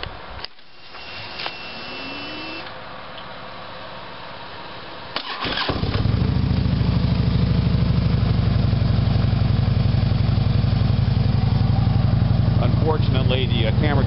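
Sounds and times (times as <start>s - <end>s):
motorcycle starter cranking: 5.2s - 6.2s
motorcycle engine idling: 6.0s - 14.0s.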